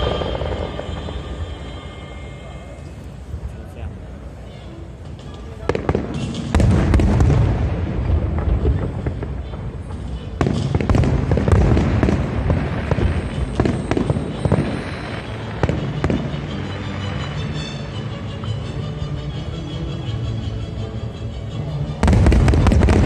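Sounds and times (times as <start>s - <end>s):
fireworks bangs and crackling: 0.0s - 3.8s, 5.0s - 17.9s, 22.0s - 23.0s.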